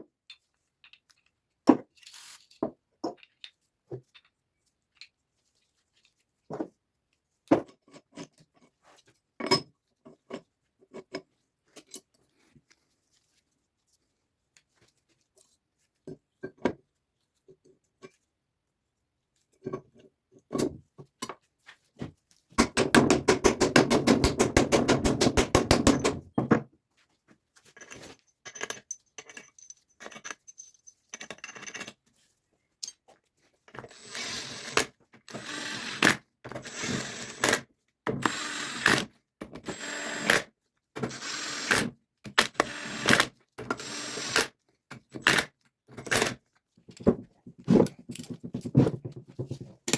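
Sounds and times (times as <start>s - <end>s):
hand tool knocking on metal: 22.6s - 26.5s.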